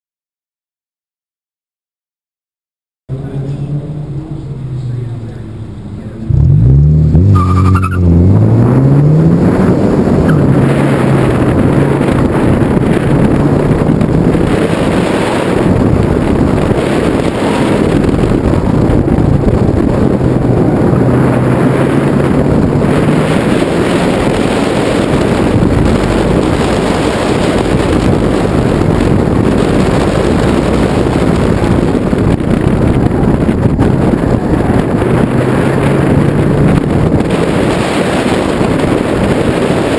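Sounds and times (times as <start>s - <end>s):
car engine revving: 3.1s - 39.9s
wind buffeting microphone: 6.3s - 39.9s.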